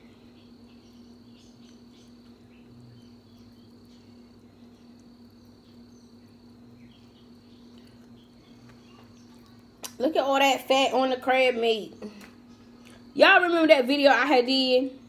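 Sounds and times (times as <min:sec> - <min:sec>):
soft eating sounds: 0:00.0 - 0:10.0
low electrical hum: 0:00.0 - 0:15.0.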